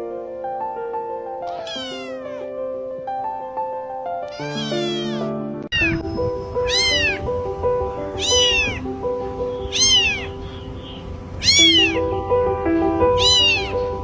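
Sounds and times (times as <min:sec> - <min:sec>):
background music: 0:00.0 - 0:14.0
kitten meowing: 0:01.4 - 0:02.5, 0:04.3 - 0:07.2, 0:08.1 - 0:08.9, 0:09.5 - 0:10.5, 0:11.4 - 0:12.1, 0:13.1 - 0:14.0.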